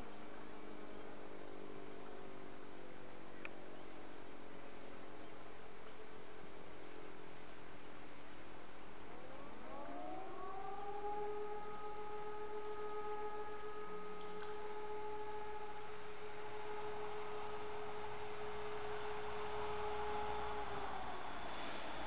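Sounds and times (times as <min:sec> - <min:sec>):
motor siren wailing: 0:09.1 - 0:22.0.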